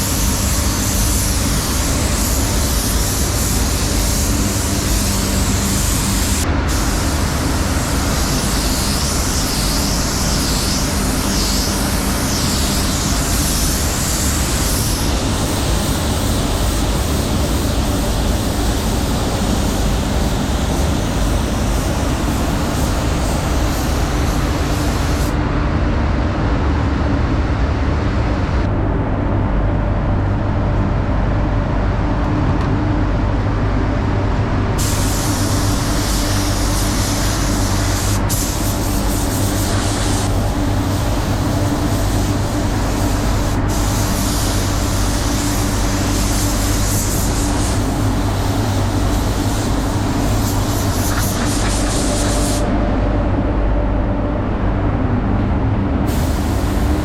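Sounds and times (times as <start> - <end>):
paint spray gun hissing: 0.0 - 25.4, 34.8 - 52.7, 56.1 - 57.0
fans rumbling and humming: 0.0 - 57.0.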